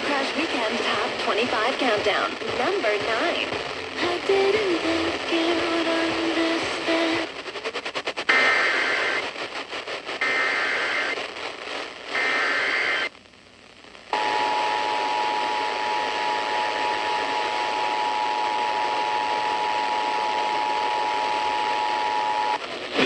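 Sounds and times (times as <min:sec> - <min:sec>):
data bursts over radio: 0:00.0 - 0:13.1
radio hiss: 0:00.0 - 0:23.0.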